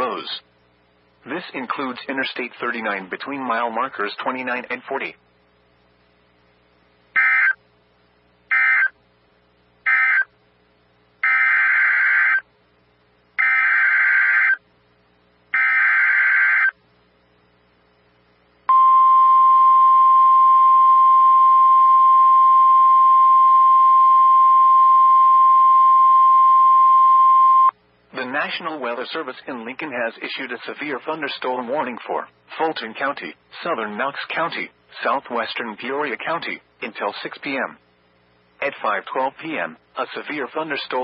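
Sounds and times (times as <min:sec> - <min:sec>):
steady single-pitch alert tone: 0:18.7 - 0:27.8.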